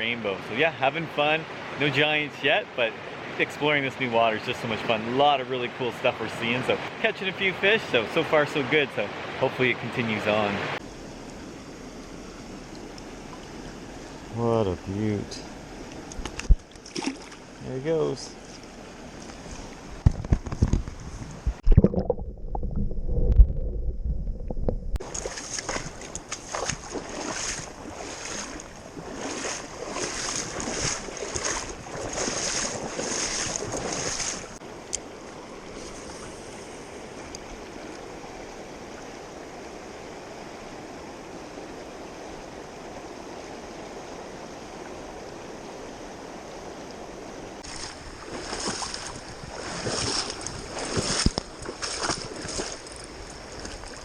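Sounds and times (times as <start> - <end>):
river water rushing: 0.0 - 20.0, 25.0 - 54.0
water splashing: 15.8 - 39.1, 47.6 - 54.0.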